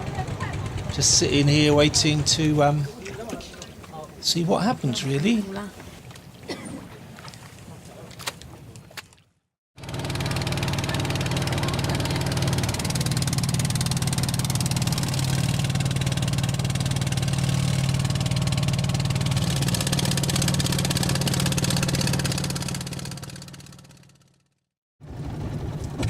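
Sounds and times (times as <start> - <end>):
boat engine humming: 0.0 - 9.0, 9.8 - 24.4.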